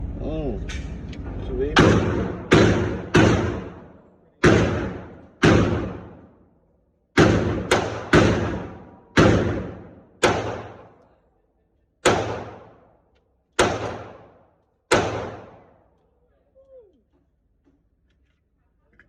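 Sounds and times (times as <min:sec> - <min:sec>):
pistol shots: 0:01.8 - 0:06.3, 0:07.2 - 0:11.0, 0:12.0 - 0:12.9, 0:13.6 - 0:15.8.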